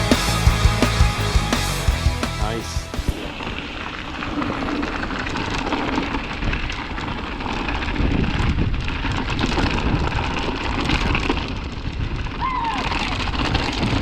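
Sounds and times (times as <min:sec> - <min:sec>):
wind and tyre rush: 0:03.1 - 0:14.0.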